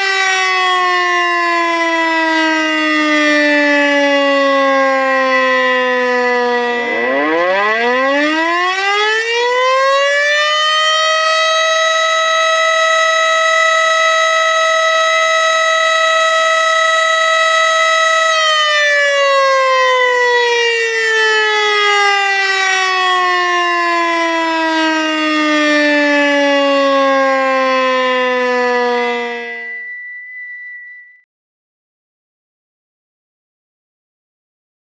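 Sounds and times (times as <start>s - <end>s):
tornado warning siren wailing: 0.0s - 30.9s.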